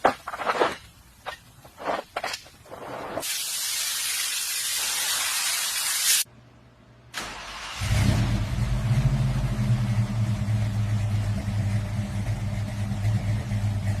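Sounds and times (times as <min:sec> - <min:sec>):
car engine idling: 0:07.4 - 0:14.0.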